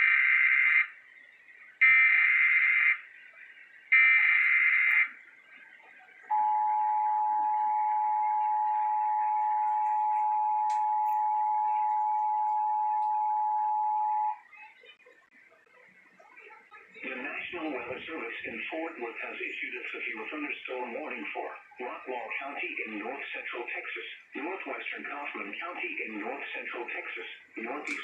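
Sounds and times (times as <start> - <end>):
two-tone attention signal: 6.3 - 14.4.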